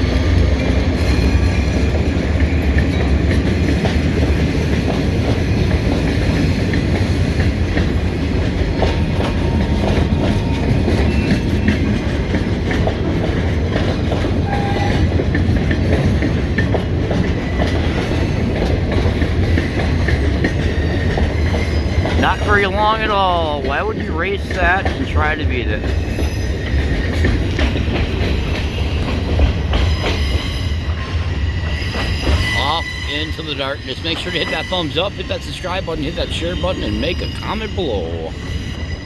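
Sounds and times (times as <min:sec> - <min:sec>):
freight train rumble: 0:00.0 - 0:39.0
wheels clicking over rail joints: 0:00.7 - 0:22.2.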